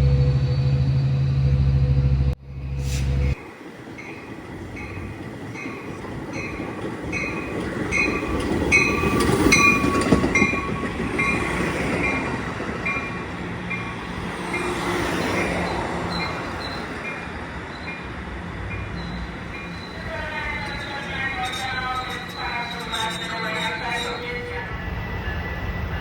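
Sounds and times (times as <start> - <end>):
train wheels rumbling on rails: 0.0 - 26.0
bell clanging: 18.8 - 24.7.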